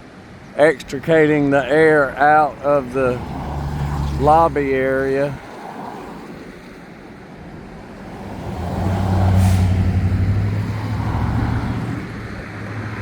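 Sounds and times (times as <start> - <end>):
vehicle engine humming: 0.4 - 13.0
short hiss: 9.4 - 9.8.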